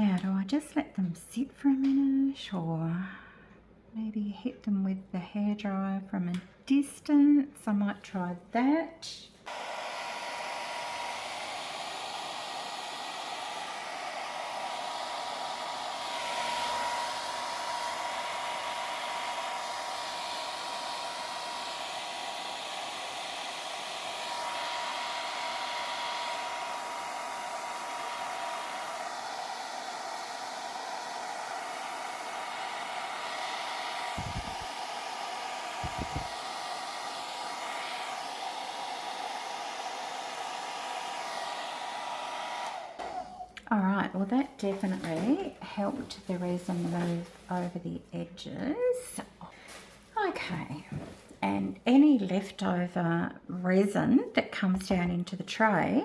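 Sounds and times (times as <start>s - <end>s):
hair dryer blowing: 9.4s - 52.6s.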